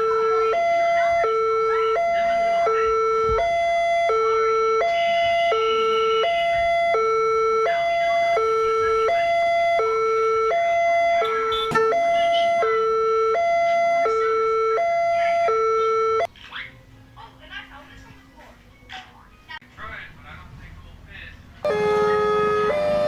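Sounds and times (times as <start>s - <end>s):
electronic two-tone siren: 0.0s - 16.3s, 21.7s - 23.0s.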